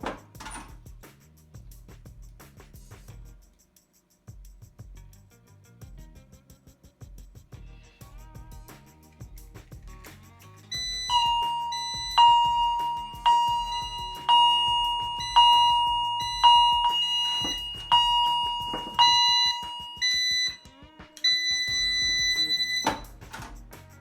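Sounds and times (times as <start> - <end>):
fire alarm chime: 10.7 - 23.1
short beeps: 10.7 - 23.1
steady high tone: 10.7 - 23.1.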